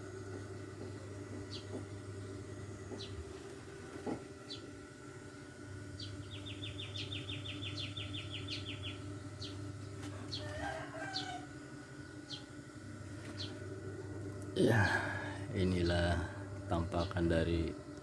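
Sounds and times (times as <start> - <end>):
steady low hum: 0.0 - 18.0
bird chirps: 6.0 - 9.6
rapid high bird trill: 6.0 - 9.6
rooster crow: 10.0 - 11.7.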